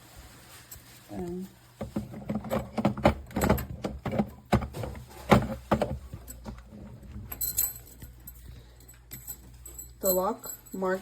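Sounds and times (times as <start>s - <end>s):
portafilter clicking and knocking: 1.8s - 7.3s.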